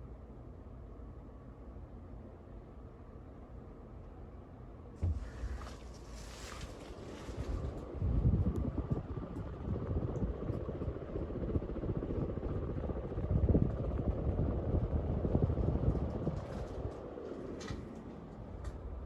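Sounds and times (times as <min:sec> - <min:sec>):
ceiling fan whooshing: 0:05.0 - 0:19.0.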